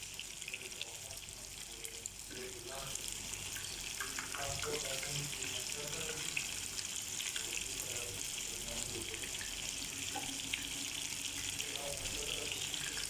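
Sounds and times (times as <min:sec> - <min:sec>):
food frying in hot oil: 0:00.0 - 0:13.0.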